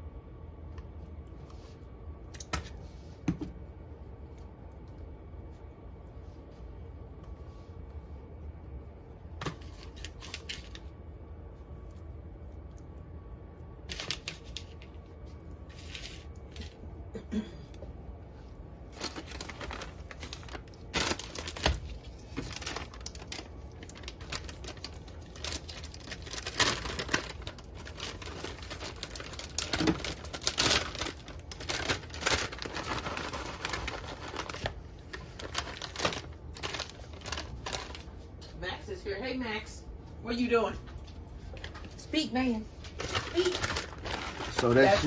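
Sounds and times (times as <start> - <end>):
plastic packaging crinkling: 9.3 - 10.9, 13.7 - 17.0, 18.8 - 38.4, 42.8 - 45.0.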